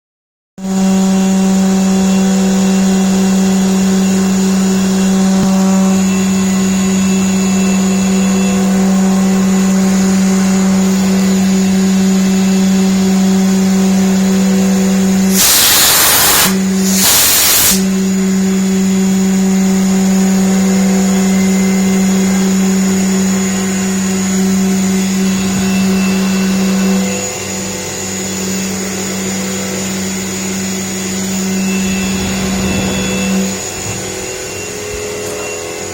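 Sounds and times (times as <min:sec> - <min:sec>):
machine hum with high whine: 0:00.6 - 0:35.9
loud hisses: 0:15.2 - 0:18.0.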